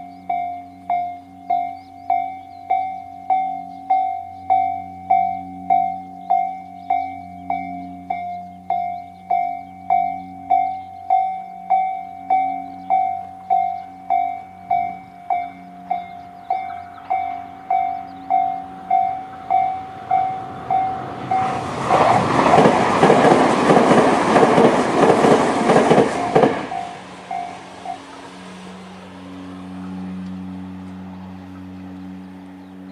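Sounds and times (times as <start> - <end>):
level crossing bell ringing: 0.0 - 21.6
train passing with wheel clatter: 0.0 - 32.9.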